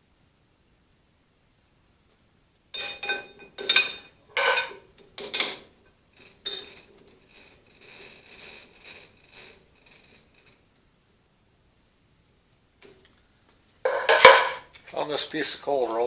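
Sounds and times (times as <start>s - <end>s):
steel bars clanking: 2.8s - 5.7s, 6.4s - 6.9s, 13.9s - 14.6s
metal rattling: 2.8s - 10.6s, 13.9s - 14.7s.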